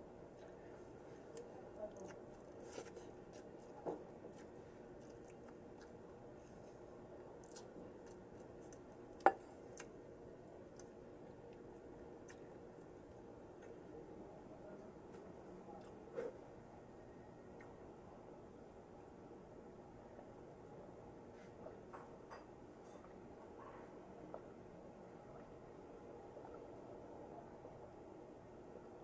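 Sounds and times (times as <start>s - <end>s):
chewing fried vegetables: 0.2s - 14.0s, 15.3s - 16.1s.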